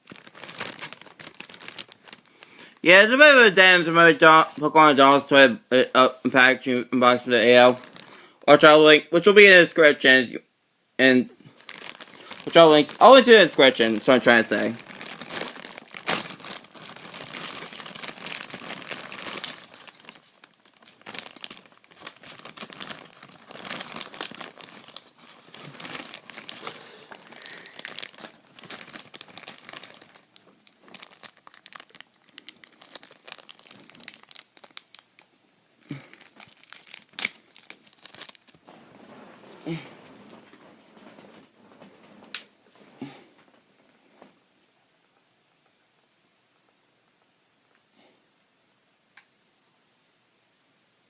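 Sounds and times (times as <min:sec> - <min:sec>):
plastic packaging crinkling: 0:00.0 - 0:02.8, 0:07.4 - 0:08.2, 0:11.5 - 0:42.6.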